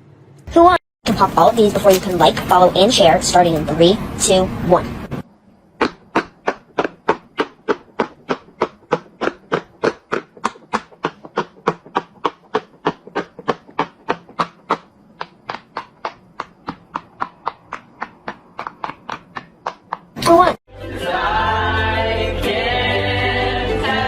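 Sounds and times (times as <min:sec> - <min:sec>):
fidget toy bubbles popping: 0:05.8 - 0:20.5.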